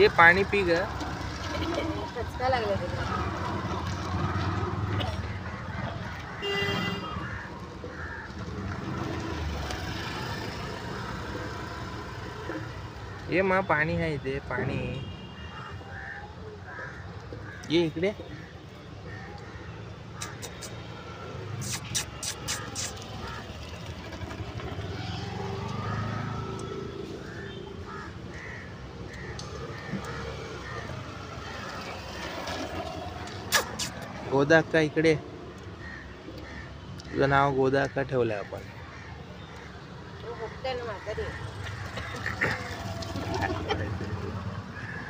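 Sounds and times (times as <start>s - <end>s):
street traffic rumble: 0.0s - 45.0s
vehicle engine passing by: 8.3s - 12.7s, 21.5s - 27.5s, 41.3s - 44.7s.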